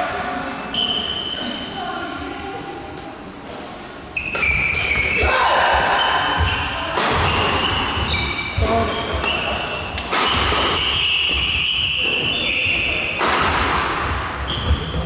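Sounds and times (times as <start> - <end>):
shoes squeaking on floor: 0.6 - 1.8, 4.2 - 5.2, 5.9 - 13.2, 14.4 - 15.0
rackets hitting shuttlecock: 4.2 - 15.0.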